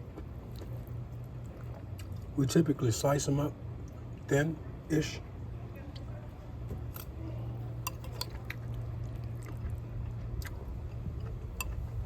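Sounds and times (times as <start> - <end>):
person chewing food: 0.1 - 2.3, 7.9 - 12.0
cutlery clicks: 7.9 - 8.3.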